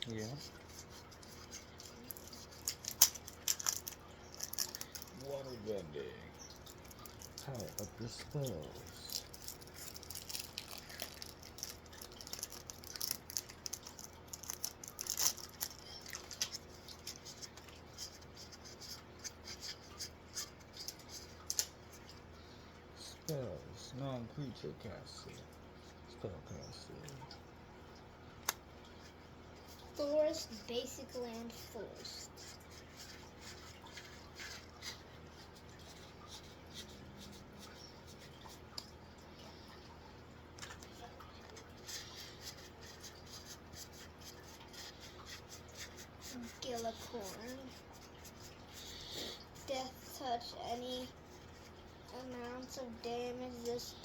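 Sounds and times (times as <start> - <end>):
cards clicking and rustling: 0.6 - 5.3, 8.4 - 21.8.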